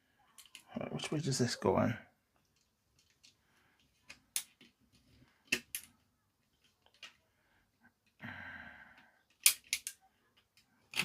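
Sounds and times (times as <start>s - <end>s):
plastic toy parts clicking: 0.3s - 0.7s, 2.5s - 7.2s, 9.2s - 11.0s.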